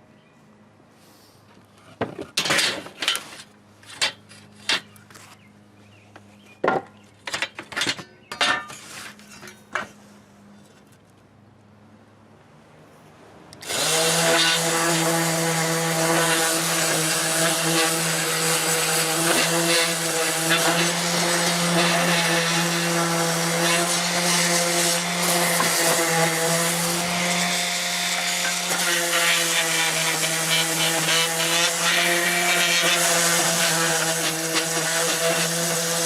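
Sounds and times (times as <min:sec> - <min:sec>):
orbital sander motor hum: 0:13.6 - 0:36.0.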